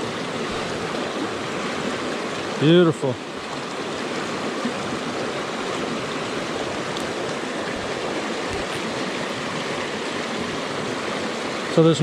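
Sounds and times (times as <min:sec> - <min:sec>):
creek rushing over rocks: 0:00.0 - 0:12.0.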